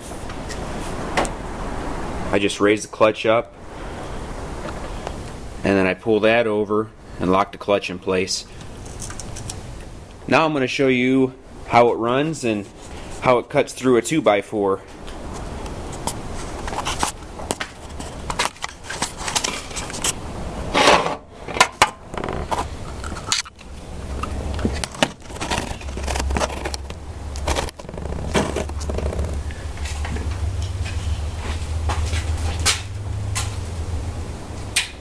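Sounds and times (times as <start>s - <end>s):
sawmill clattering and scraping: 20.7s - 23.6s, 24.6s - 30.2s
engine drone: 22.1s - 35.0s.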